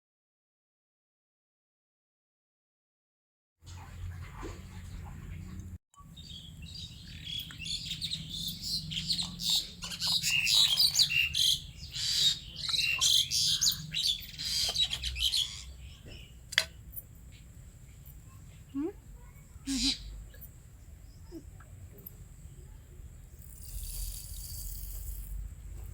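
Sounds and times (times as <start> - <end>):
small birds chirping: 5.4 - 25.9.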